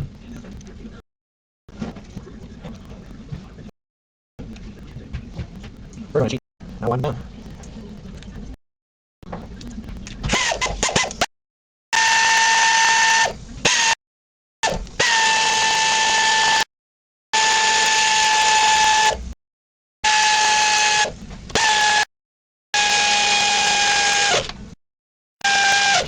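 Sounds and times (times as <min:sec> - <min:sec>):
power driver whining: 0:14.6 - 0:16.7, 0:20.0 - 0:22.1, 0:25.4 - 0:26.0.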